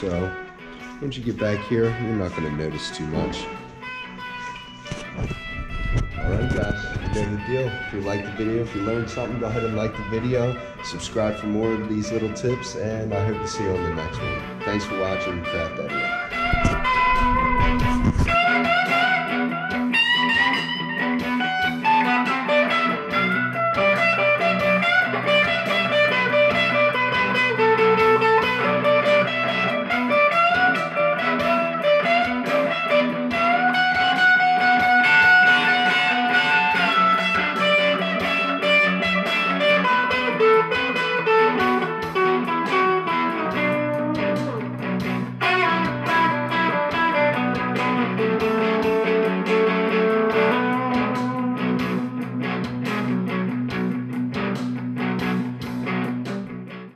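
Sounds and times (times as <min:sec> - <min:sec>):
electric guitar melody: 0:00.0 - 0:56.9
steady bass line: 0:04.9 - 0:18.5.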